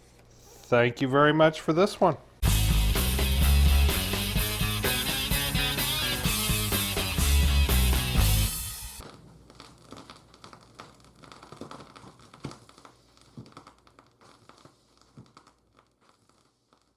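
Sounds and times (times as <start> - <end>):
rock music: 2.4 - 9.0
packaging crinkling and rustling: 9.0 - 16.9.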